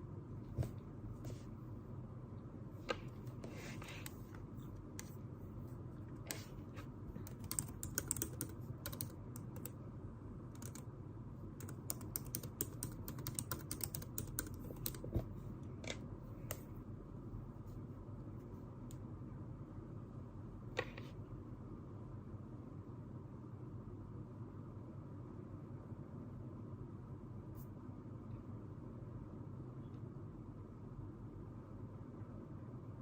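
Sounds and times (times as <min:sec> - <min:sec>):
low room hum: 0:00.0 - 0:33.0
computer keyboard keys clicking: 0:07.2 - 0:09.8, 0:10.6 - 0:10.9, 0:11.6 - 0:15.2.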